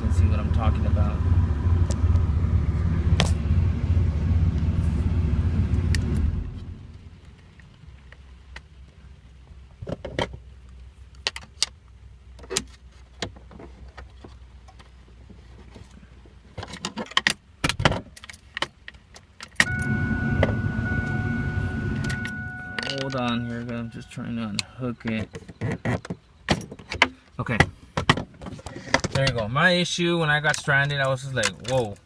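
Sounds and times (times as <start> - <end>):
steady hum with high whine: 0.0 - 7.3, 19.6 - 24.8
faint low hum: 19.6 - 25.0
ignition key clicking and jangling: 31.4 - 32.0.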